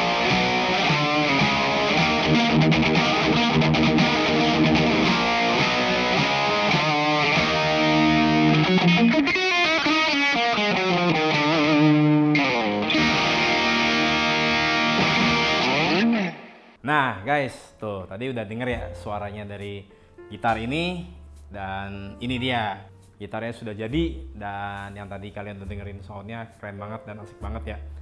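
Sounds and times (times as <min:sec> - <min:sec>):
distorted electric guitar lead: 0:00.0 - 0:16.8.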